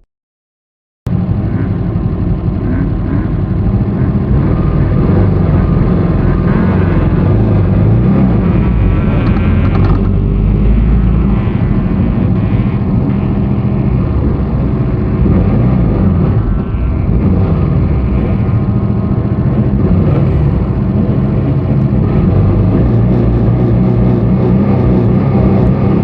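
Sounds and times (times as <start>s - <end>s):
vehicle engine running under load: 1.1s - 26.0s.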